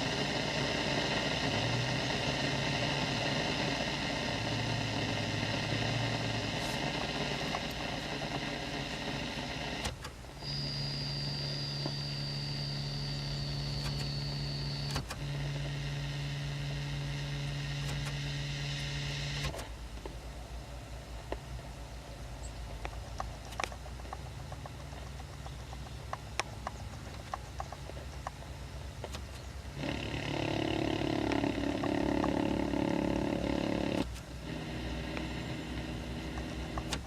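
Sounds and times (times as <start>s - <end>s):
multi-tone drone: 0.0s - 19.6s
engine idling: 0.0s - 20.0s, 22.0s - 37.0s
scattered clicks: 12.8s - 15.7s, 17.4s - 20.2s, 22.8s - 37.0s.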